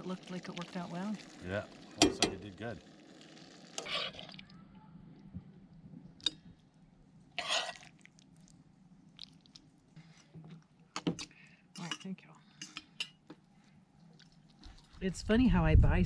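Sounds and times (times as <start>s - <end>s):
cookware scrape: 2.0s - 2.5s, 3.8s - 4.3s, 7.4s - 7.9s.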